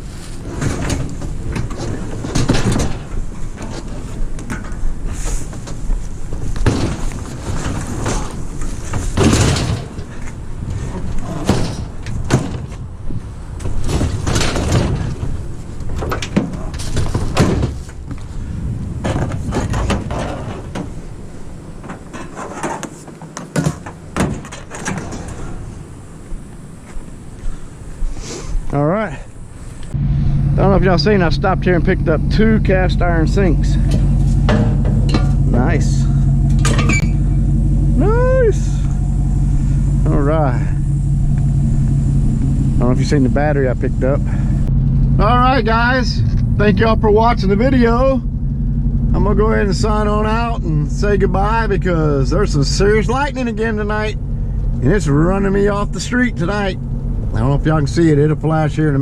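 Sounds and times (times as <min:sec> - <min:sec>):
metal scrap bangs and scrapes: 0:00.0 - 0:12.9, 0:13.6 - 0:18.1, 0:19.0 - 0:21.1, 0:21.7 - 0:25.8, 0:30.0 - 0:37.9
steady low rumble: 0:00.0 - 0:22.2, 0:24.8 - 0:59.0.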